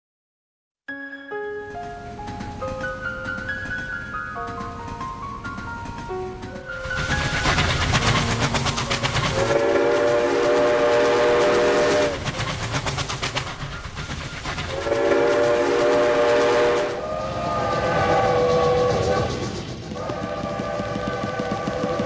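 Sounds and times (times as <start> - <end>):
train wheel clatter: 2.2 - 22.0
train horn blasts: 9.3 - 12.2, 14.7 - 22.0.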